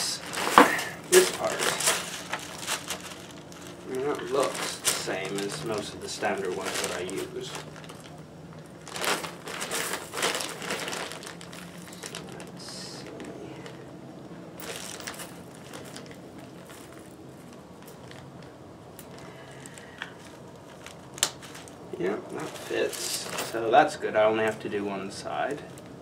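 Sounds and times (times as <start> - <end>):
hands rummaging through fasteners: 0.0 - 8.2, 8.8 - 13.8, 14.6 - 18.3, 22.4 - 23.7.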